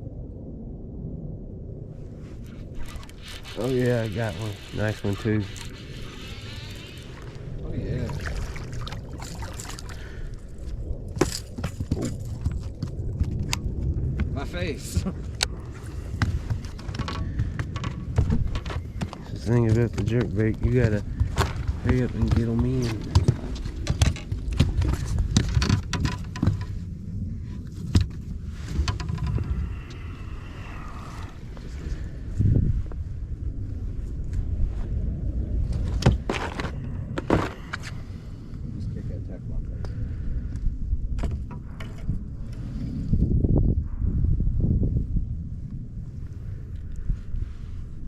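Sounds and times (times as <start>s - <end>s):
steady low rumble: 0.0s - 48.0s
water splashing and sloshing: 1.9s - 32.2s
knocks and rattles on a boat: 16.1s - 26.8s, 27.9s - 29.5s.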